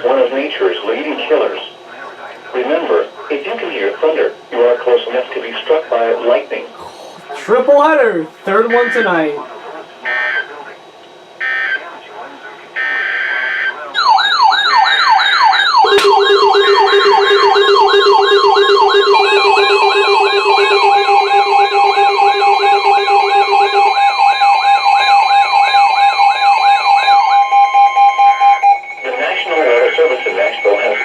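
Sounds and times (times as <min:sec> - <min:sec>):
steady high alarm tone: 0:06.8 - 0:09.4, 0:12.8 - 0:31.0
warbling electronic siren: 0:08.5 - 0:09.4, 0:12.8 - 0:31.0
lower steady tone: 0:15.9 - 0:25.2.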